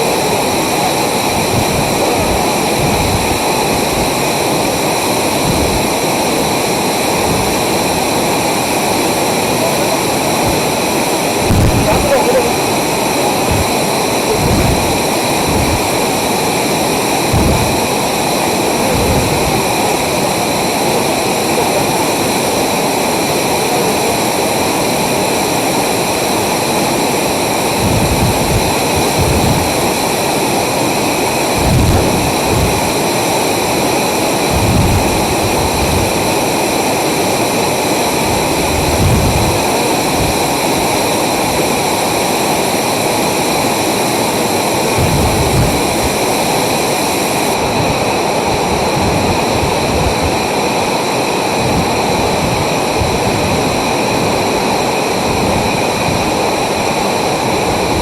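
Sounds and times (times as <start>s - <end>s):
waterfall roaring: 0.0s - 58.0s
thumps on microphone: 17.3s - 17.8s.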